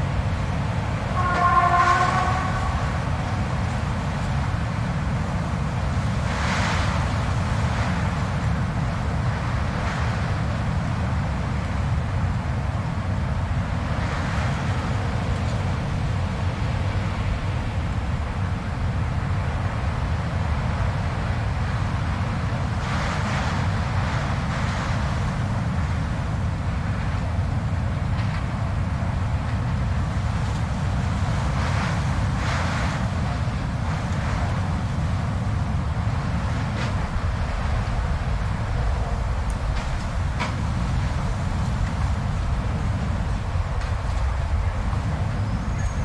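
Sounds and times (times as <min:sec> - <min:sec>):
blizzard wind gusts: 0:00.0 - 0:46.0
whistling wind howl: 0:00.0 - 0:46.0.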